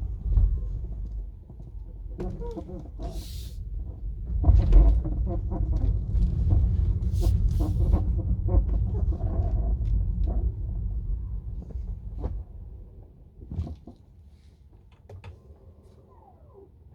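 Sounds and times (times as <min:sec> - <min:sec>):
suspension squeaking and creaking: 0:02.1 - 0:03.5.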